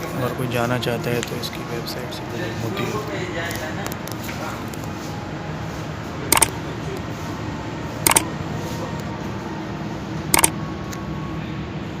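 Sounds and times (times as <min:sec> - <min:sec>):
steady low hum: 0:04.7 - 0:12.0.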